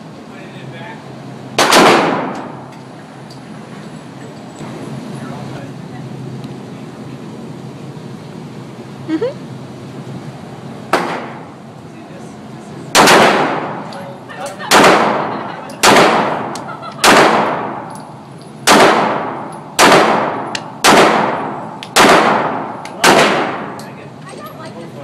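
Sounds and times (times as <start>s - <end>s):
handgun shots echoing: 1.6s - 2.6s, 11.0s - 11.4s, 13.0s - 13.8s, 14.7s - 18.0s, 18.6s - 23.9s.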